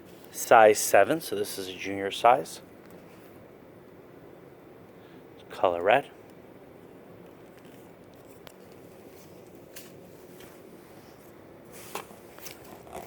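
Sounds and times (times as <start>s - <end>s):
clothing and packaging rustling: 7.3s - 13.0s.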